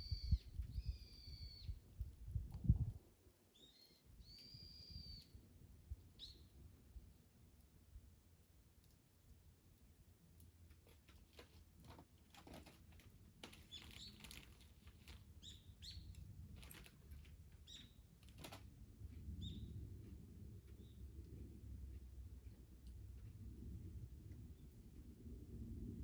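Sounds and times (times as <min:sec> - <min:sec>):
small bird chirping: 0:00.0 - 0:02.4, 0:03.5 - 0:05.4, 0:06.1 - 0:06.6, 0:13.6 - 0:16.8, 0:17.6 - 0:18.1, 0:19.4 - 0:19.8.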